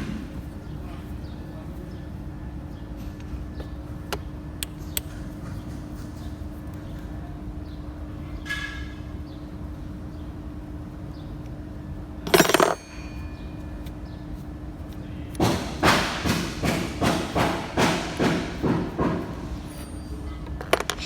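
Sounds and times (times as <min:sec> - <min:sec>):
hammer striking metal: 0:12.3 - 0:13.1, 0:15.4 - 0:20.0.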